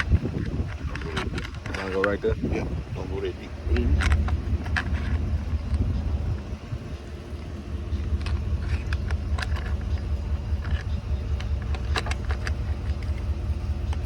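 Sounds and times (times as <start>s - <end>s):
low rumble: 0.0s - 14.0s
screwdriver and metal parts clicking: 7.9s - 14.0s.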